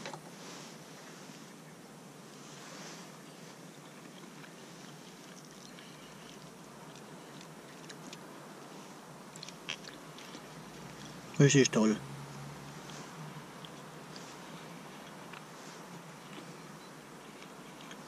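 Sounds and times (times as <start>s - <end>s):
steady background hiss: 0.0s - 18.0s
person chewing: 3.6s - 8.7s, 9.3s - 11.3s, 12.6s - 18.0s.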